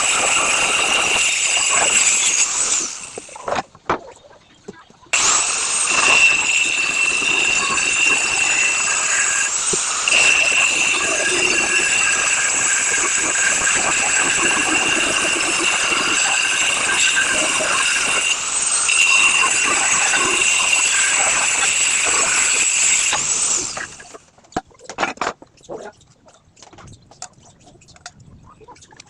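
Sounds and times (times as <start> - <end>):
angle grinder cutting tile: 0.0 - 3.7, 5.1 - 24.3.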